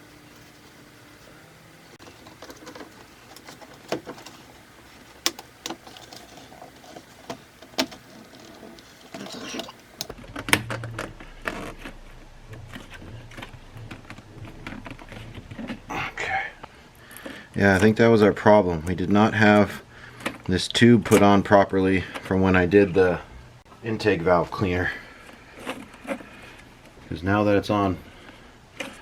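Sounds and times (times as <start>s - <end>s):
rustling and rubbing handling noise: 0.0s - 10.1s
sharp clicks and knocks: 1.9s - 10.8s.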